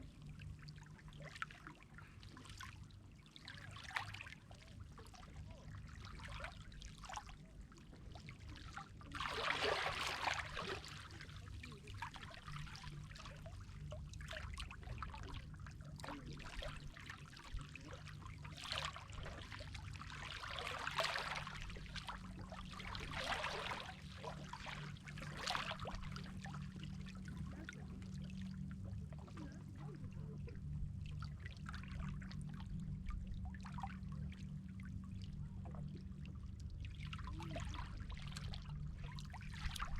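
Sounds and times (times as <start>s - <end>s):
sea water lapping and splashing: 0.0s - 39.9s
steady low rumble: 21.2s - 39.9s.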